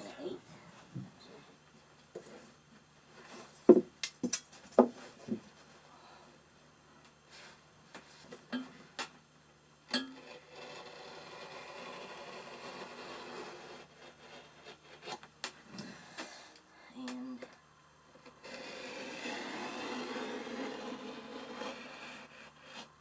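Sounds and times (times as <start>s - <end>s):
knife cutting through felt: 18.4s - 22.9s.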